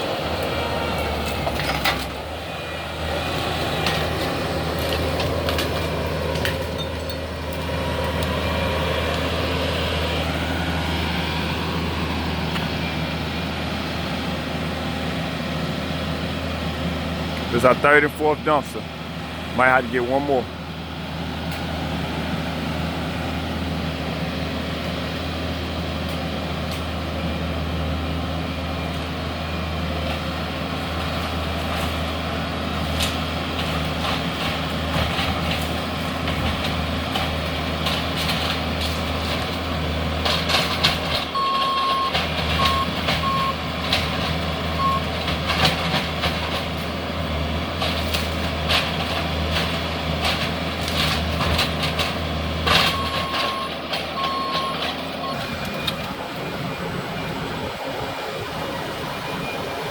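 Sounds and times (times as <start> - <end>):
demolition machine engine running: 0.0 - 59.9
debris clattering and knocking: 1.2 - 2.2, 3.8 - 7.7, 40.2 - 46.9, 47.8 - 55.9
backup alarm beeping: 41.3 - 43.6, 44.8 - 45.1, 52.9 - 59.9.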